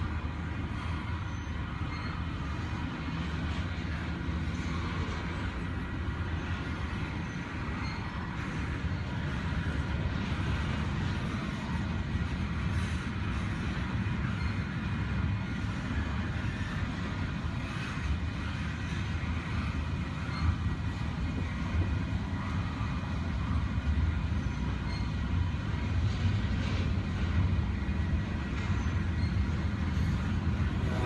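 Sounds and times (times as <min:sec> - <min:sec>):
train clanks: 0:00.0 - 0:31.0
train wheels rumbling on rails: 0:00.0 - 0:31.0
faint metallic squeal: 0:01.2 - 0:02.3, 0:07.2 - 0:08.2, 0:14.2 - 0:14.7, 0:20.2 - 0:20.6, 0:24.4 - 0:25.3, 0:28.6 - 0:30.2.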